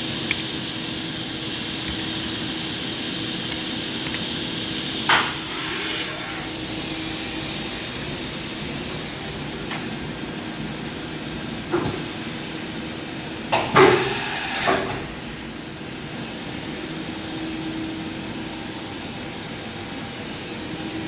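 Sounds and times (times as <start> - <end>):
hissing air: 0.0 - 9.2
machining center humming: 0.0 - 21.0.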